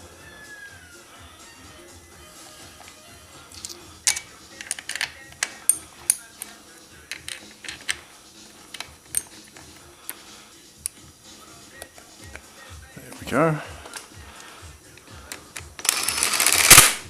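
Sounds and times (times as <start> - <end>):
metallic clicks of tools: 3.5 - 8.0, 8.7 - 10.2.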